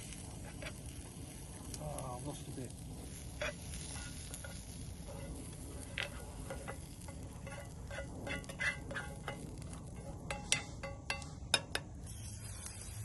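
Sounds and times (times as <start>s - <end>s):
utensil scraping camp cookware: 0.0s - 13.0s.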